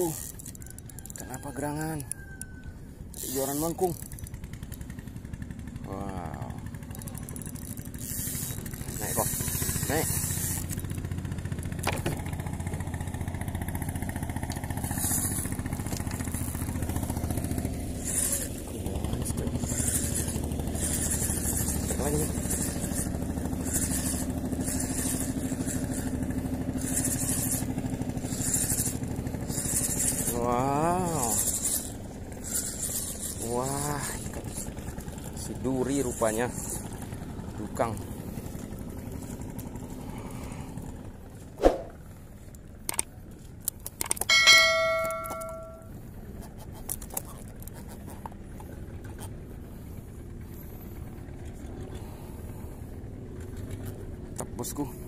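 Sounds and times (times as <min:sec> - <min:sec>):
small engine running: 0:00.0 - 0:55.0
bright metallic ring: 0:44.3 - 0:46.0.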